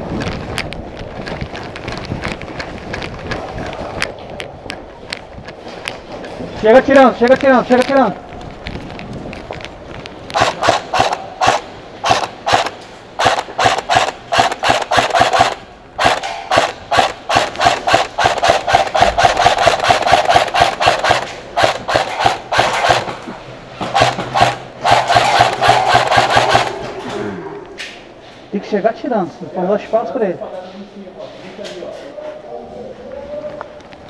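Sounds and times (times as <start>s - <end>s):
airsoft gun rapid shots: 10.4s - 23.2s, 23.8s - 26.9s.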